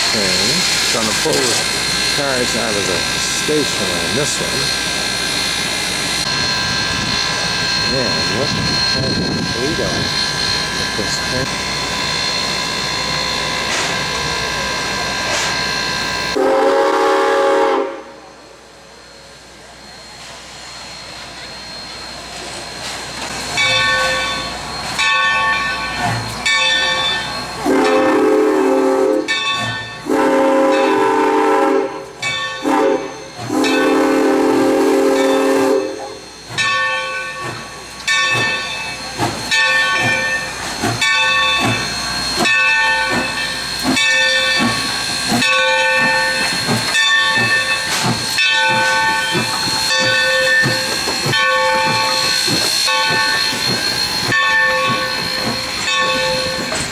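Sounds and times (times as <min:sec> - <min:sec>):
locomotive bell ringing: 0:00.0 - 0:16.4, 0:20.8 - 0:31.2, 0:31.8 - 0:56.9
steam hissing: 0:00.0 - 0:56.9
steam locomotive whistle blasts: 0:15.1 - 0:18.4, 0:27.0 - 0:36.6.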